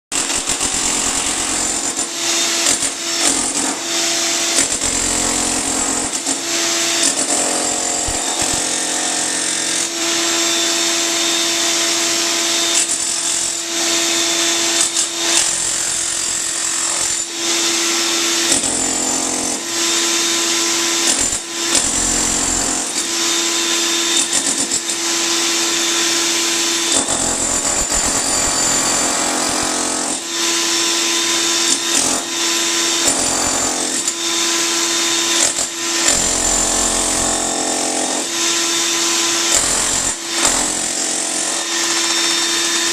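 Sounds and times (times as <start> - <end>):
jackhammer breaking concrete: 0.1 - 42.9.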